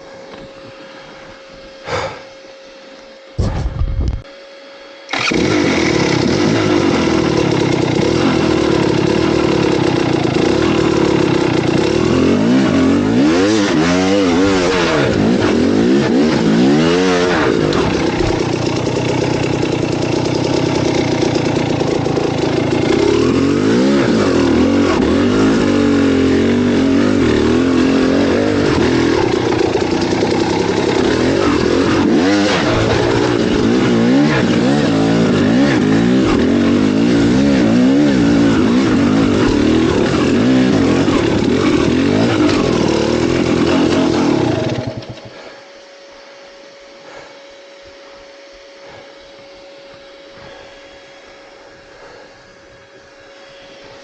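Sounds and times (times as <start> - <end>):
motorcycle engine running: 3.4 - 4.4, 5.1 - 46.0.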